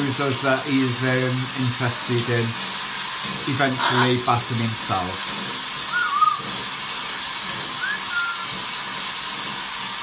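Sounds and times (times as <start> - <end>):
shower spray hissing: 0.0 - 10.0
macaw whistle-like calls: 5.9 - 6.4, 7.8 - 8.5.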